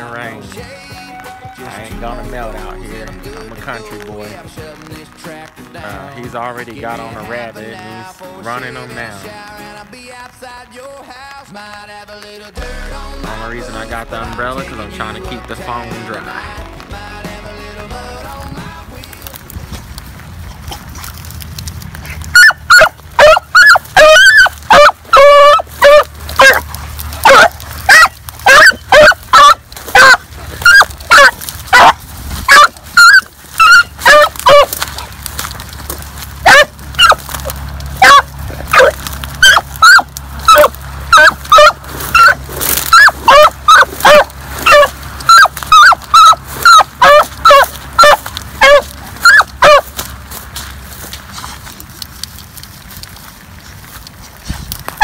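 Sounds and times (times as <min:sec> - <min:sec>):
dog barking: 0:22.3 - 0:34.8, 0:36.4 - 0:37.2, 0:38.0 - 0:49.9.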